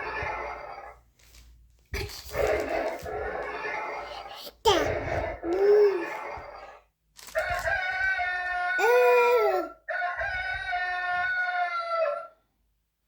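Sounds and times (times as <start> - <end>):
rooster crowing: 7.4 - 9.2, 9.9 - 12.4.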